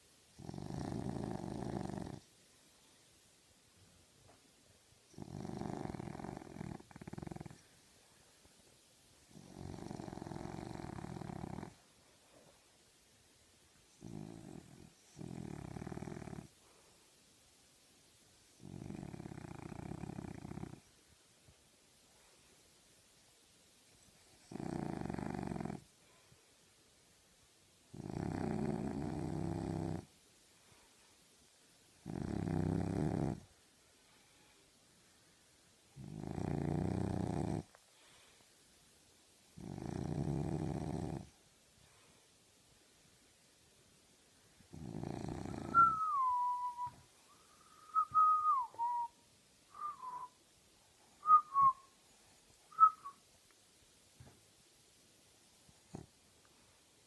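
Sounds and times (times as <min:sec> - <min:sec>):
dog snoring: 0:00.4 - 0:02.3, 0:05.1 - 0:07.7, 0:09.3 - 0:11.9, 0:13.9 - 0:16.6, 0:18.6 - 0:20.9, 0:24.3 - 0:25.9, 0:27.9 - 0:30.1, 0:32.0 - 0:33.5, 0:35.9 - 0:37.8, 0:39.6 - 0:41.4, 0:44.7 - 0:47.0, 0:55.9 - 0:56.1.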